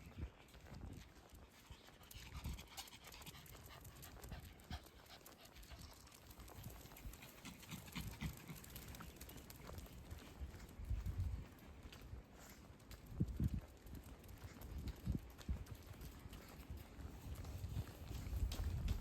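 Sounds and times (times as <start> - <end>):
dog panting: 1.2 - 10.6.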